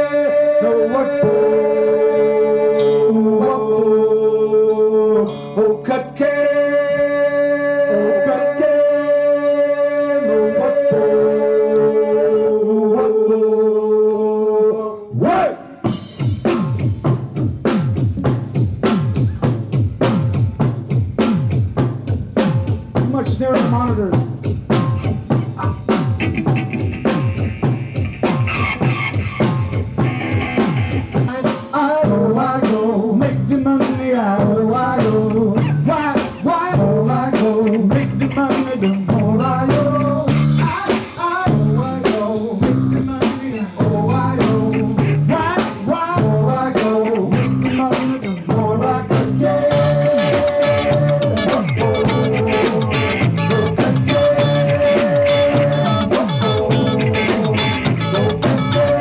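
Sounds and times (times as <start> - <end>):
person singing: 0.0 - 15.8, 22.4 - 26.4, 27.0 - 59.0
live band playing: 15.6 - 59.0.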